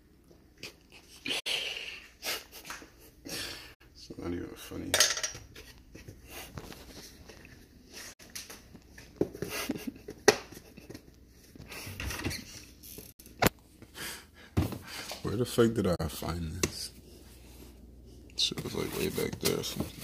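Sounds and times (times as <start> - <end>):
kitchen items knocking and rustling: 4.9 - 7.4, 14.5 - 15.0.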